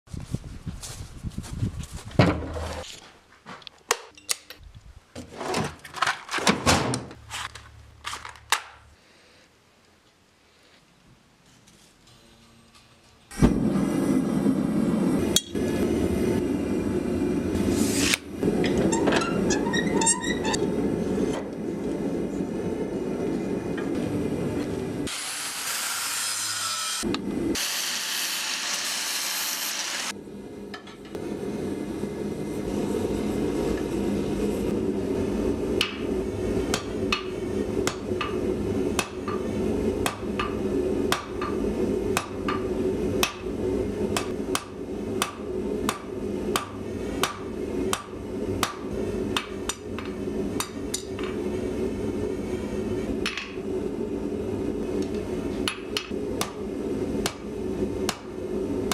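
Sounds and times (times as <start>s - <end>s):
forge humming: 12.0s - 58.9s.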